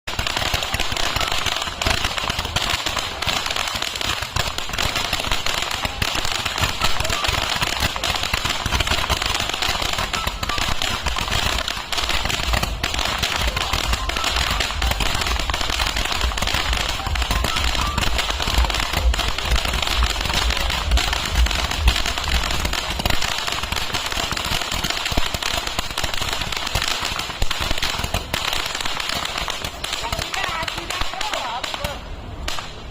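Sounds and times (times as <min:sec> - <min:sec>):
firework cake crackling barrage: 0:00.0 - 0:32.9
low rumble: 0:14.6 - 0:23.7.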